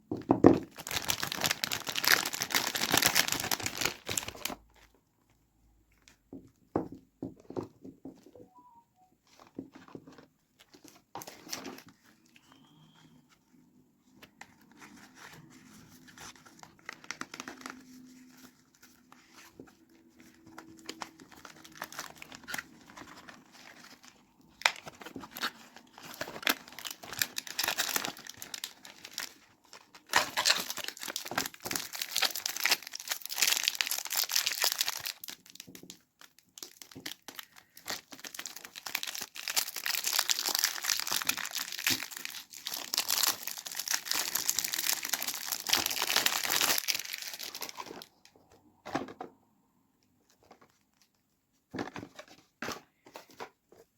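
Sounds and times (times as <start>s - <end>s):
wrapper crinkling and tearing: 0.7s - 4.6s, 14.6s - 48.3s.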